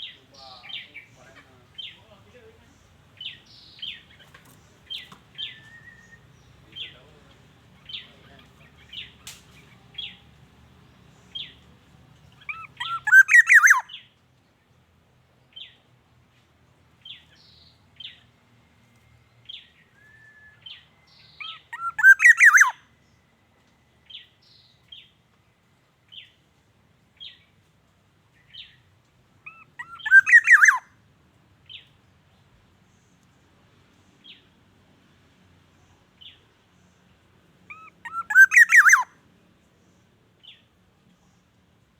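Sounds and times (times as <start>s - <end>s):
oriole calling gliding notes: 12.5s - 13.9s, 21.7s - 22.8s, 29.5s - 30.8s, 37.7s - 39.1s.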